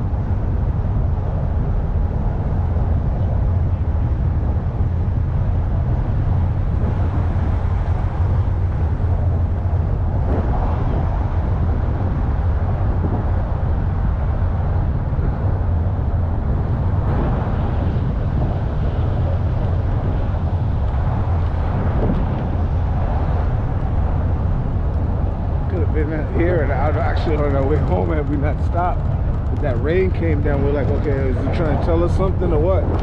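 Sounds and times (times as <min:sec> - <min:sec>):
steady low rumbling: 0:00.0 - 0:33.0.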